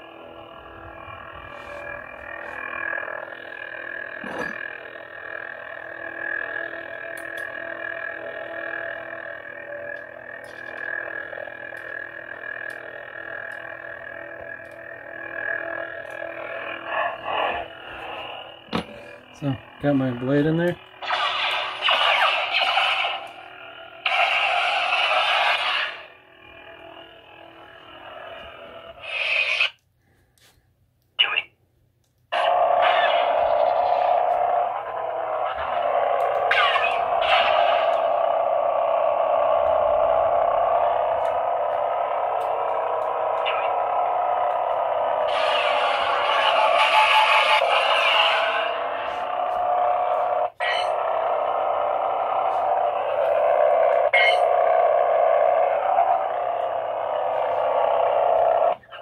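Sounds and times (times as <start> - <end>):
lightsaber electric hum: 0.0 - 30.5, 32.0 - 59.0.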